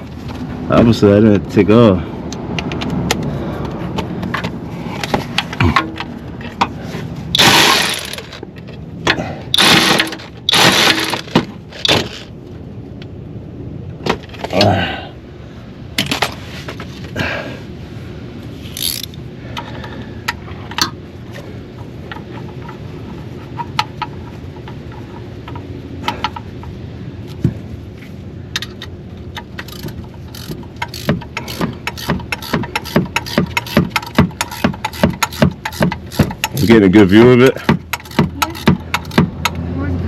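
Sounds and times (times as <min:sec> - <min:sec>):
metal tool clicks and clinks: 0:18.8 - 0:19.2.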